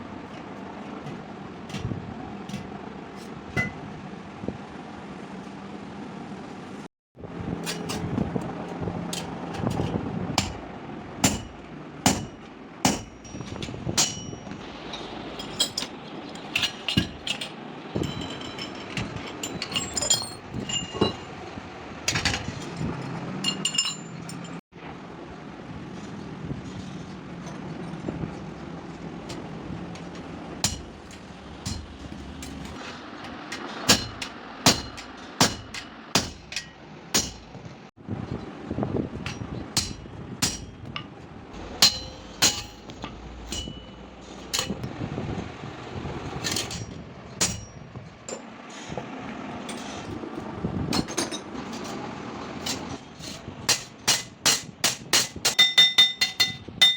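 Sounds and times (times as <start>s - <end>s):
low background hum: 0.0s - 56.9s
metal tools striking metal: 11.2s - 21.4s, 23.4s - 24.6s, 30.6s - 37.5s, 39.2s - 41.0s, 41.6s - 44.9s, 46.4s - 48.5s, 52.6s - 56.9s.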